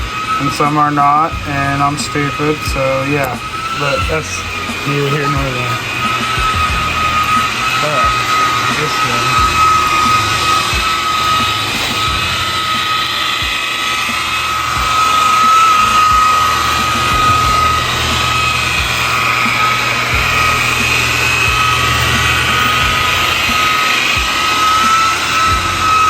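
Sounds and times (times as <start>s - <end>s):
electric polisher whining: 0.0s - 26.0s.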